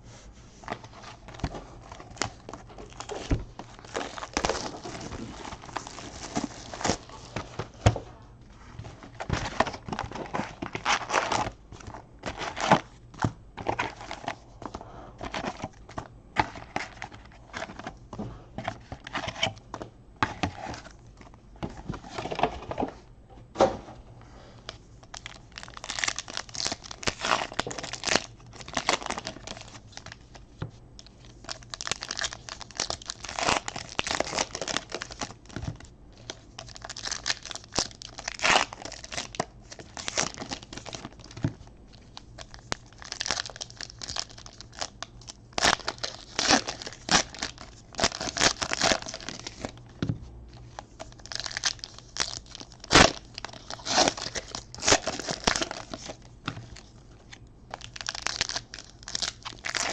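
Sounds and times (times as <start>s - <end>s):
card pack wrappers tearing and crinkling: 0.8s - 7.6s, 8.9s - 12.9s, 13.6s - 14.4s, 25.0s - 30.4s, 31.0s - 49.9s, 50.5s - 59.9s.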